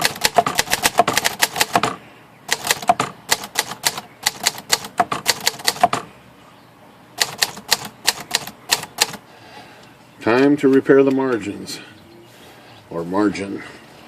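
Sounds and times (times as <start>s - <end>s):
manual typewriter typing: 0.0s - 6.0s, 7.2s - 9.2s.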